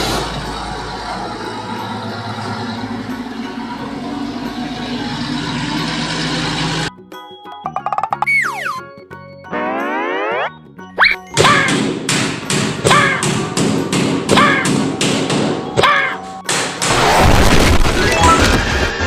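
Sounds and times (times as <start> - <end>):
loud noisy rumble: 0.0 - 6.9
cartoon thumps: 7.7 - 8.8, 9.5 - 12.0
rising sweep: 9.5 - 10.5.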